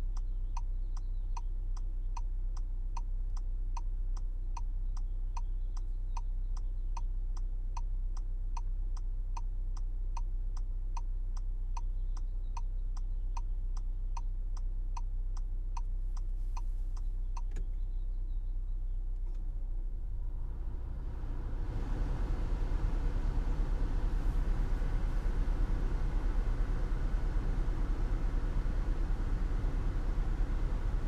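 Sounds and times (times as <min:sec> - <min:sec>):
car engine idling: 0:18.9 - 0:31.0.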